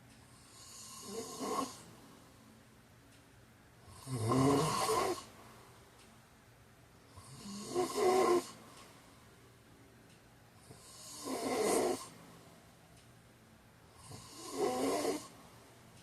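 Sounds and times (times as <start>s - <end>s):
man snoring: 0.4s - 1.9s, 3.9s - 5.3s, 7.1s - 8.6s, 10.6s - 12.1s, 13.9s - 15.4s.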